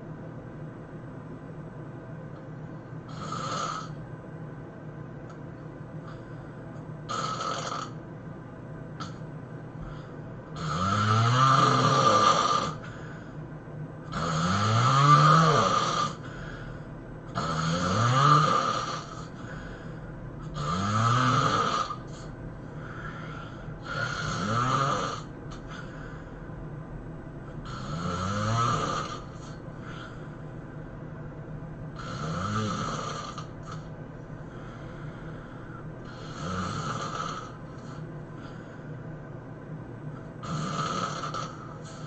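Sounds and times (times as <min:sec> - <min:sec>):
person snoring heavily: 0:03.1 - 0:04.0, 0:07.1 - 0:08.0, 0:09.8 - 0:13.2, 0:14.1 - 0:26.3, 0:27.6 - 0:30.3, 0:32.0 - 0:38.8, 0:40.4 - 0:42.0.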